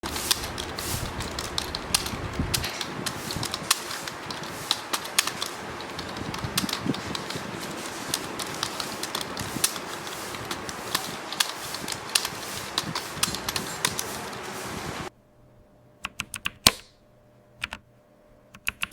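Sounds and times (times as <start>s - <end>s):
steady background hiss: 0.0s - 18.7s
mechanical keyboard key clicks: 16.0s - 16.9s, 17.6s - 17.8s, 18.6s - 18.9s.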